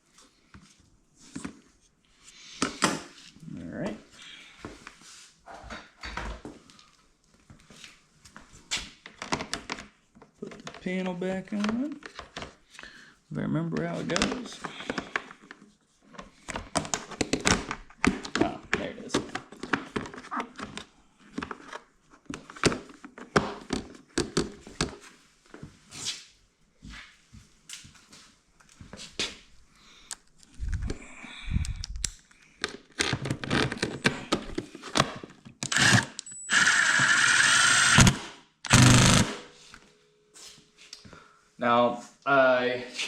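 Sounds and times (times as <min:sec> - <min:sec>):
clicks and knocks of parts handled: 0:31.6 - 0:36.3
impact wrench hammering: 0:35.7 - 0:39.5.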